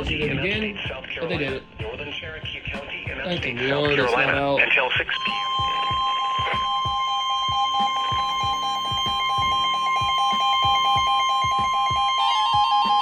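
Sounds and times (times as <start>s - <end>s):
regular beat: 0.0s - 13.0s
lower beeping tone: 5.2s - 13.0s
steady alarm tone: 5.2s - 13.0s.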